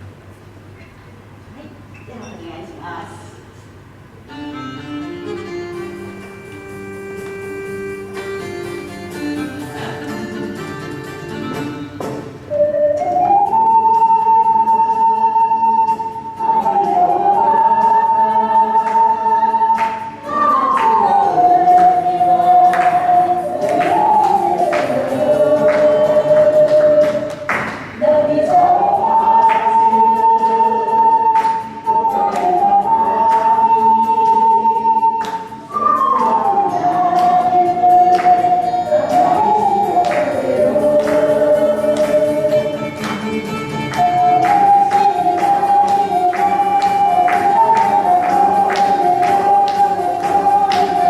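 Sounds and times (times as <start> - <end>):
ocarinas playing melody: 4.2 - 51.0
crowd singing in unison: 12.5 - 51.0.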